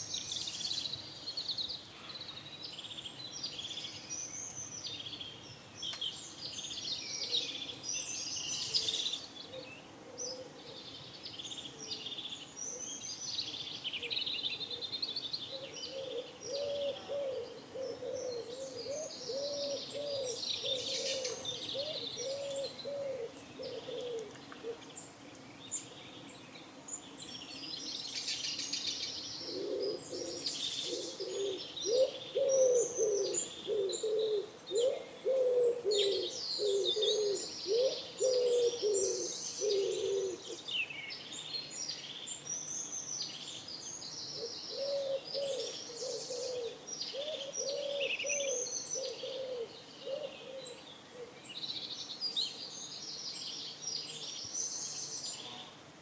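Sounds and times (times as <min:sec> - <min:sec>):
songbirds chirping: 0:00.0 - 0:56.0
pigeon cooing: 0:15.6 - 0:24.8, 0:29.4 - 0:40.6, 0:44.4 - 0:51.3.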